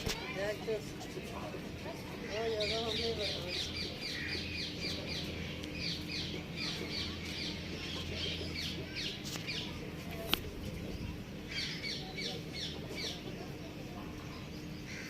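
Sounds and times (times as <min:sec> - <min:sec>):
birds chirping: 0:00.0 - 0:15.0
steady low hum: 0:00.0 - 0:15.0.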